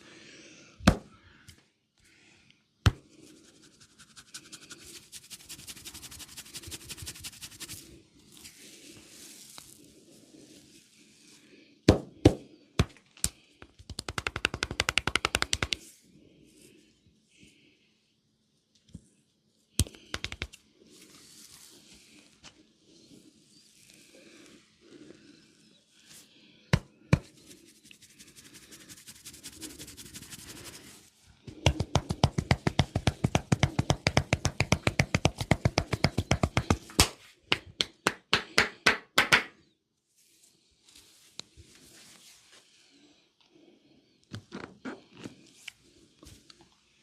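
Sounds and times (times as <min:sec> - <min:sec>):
hands slapping body: 0:00.8 - 0:01.1, 0:02.8 - 0:03.0, 0:11.9 - 0:15.8, 0:19.8 - 0:20.6, 0:31.5 - 0:39.5
soft rubbing: 0:03.2 - 0:11.3, 0:27.2 - 0:31.3.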